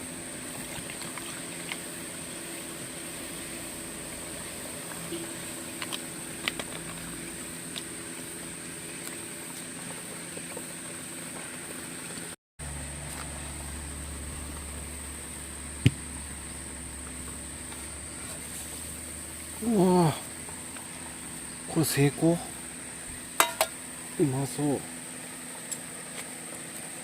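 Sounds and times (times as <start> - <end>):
low hum: 0.0 - 21.8
high-pitched insect chorus: 13.0 - 27.0.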